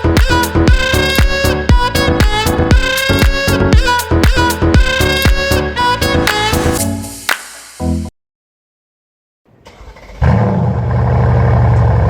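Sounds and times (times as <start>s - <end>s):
electronic dance music: 0.0s - 8.1s.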